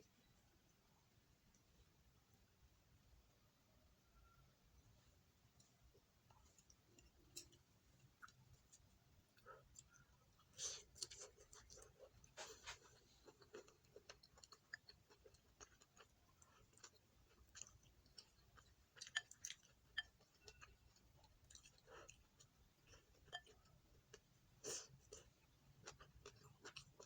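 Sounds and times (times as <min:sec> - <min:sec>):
person chewing food: 0:05.6 - 0:27.0.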